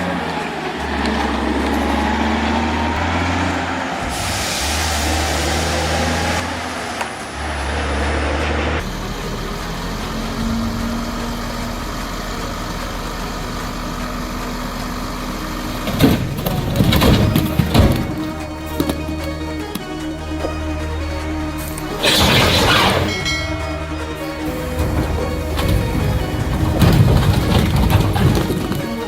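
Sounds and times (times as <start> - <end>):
heavy engine running: 0.0 - 29.0
heavy thumps: 15.8 - 20.5, 21.9 - 29.0.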